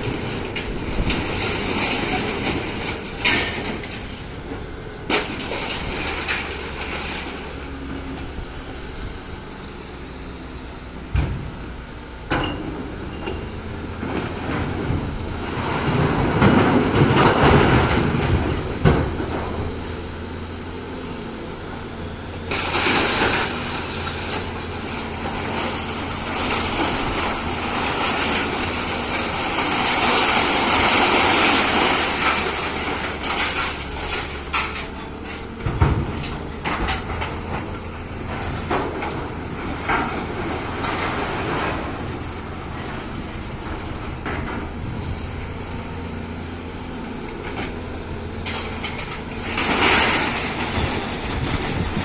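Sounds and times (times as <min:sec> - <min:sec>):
scrap metal scraping and clattering: 0:00.0 - 0:07.6, 0:22.5 - 0:45.5, 0:47.4 - 0:52.0
diesel engine under load: 0:00.0 - 0:52.0.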